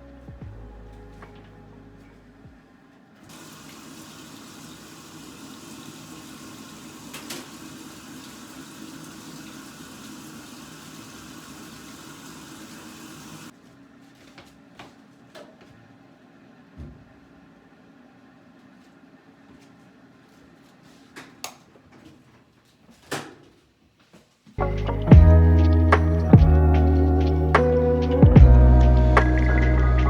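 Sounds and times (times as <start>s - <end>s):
tap water running into sink: 3.3s - 13.5s.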